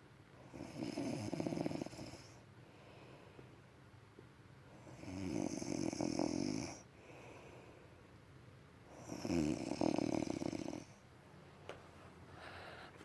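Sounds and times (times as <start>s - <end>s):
man snoring: 0.5s - 2.2s, 5.0s - 6.8s, 9.0s - 10.9s.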